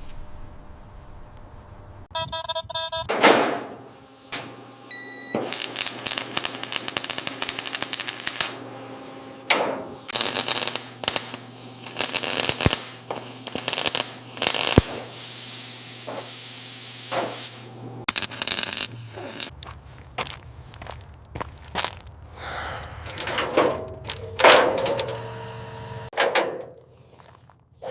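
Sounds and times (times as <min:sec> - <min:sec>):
constant low hum: 0:00.0 - 0:15.1, 0:17.1 - 0:27.9
tool rapid clicking and rattling: 0:10.1 - 0:12.8
short noisy bursts: 0:10.1 - 0:19.5.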